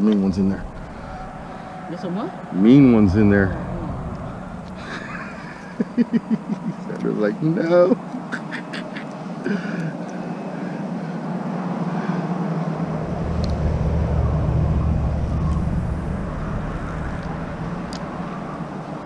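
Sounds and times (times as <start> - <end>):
vehicle passing: 0.0 - 7.5, 11.8 - 19.0.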